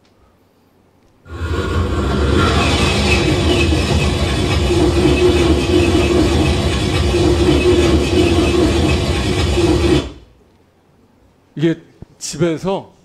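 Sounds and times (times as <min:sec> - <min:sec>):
passing train noise over loudspeakers: 0:01.3 - 0:10.3.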